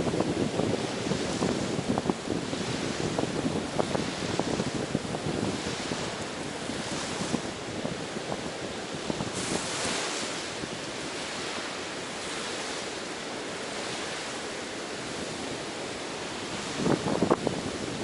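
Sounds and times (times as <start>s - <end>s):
sea waves washing onto beach: 0.0s - 18.0s
wind on microphone: 0.0s - 18.0s.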